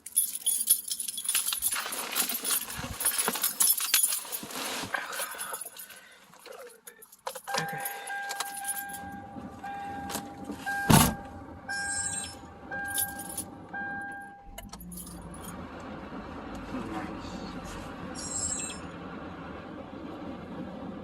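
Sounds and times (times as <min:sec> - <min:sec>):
keys jangling and clicking: 0:00.0 - 0:09.2, 0:11.9 - 0:13.5
low steady rumble: 0:07.6 - 0:21.0.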